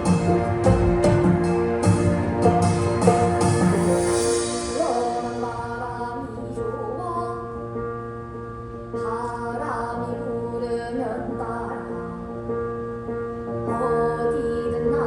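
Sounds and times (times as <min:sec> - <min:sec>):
wavering melodic line: 0:00.0 - 0:06.8
sustained drone tones: 0:00.0 - 0:07.1.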